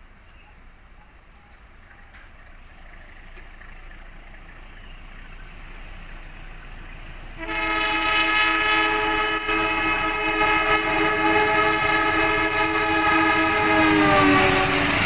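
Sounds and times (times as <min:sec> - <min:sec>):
locomotive rumble: 0:00.0 - 0:15.0
train air horn: 0:07.4 - 0:15.0.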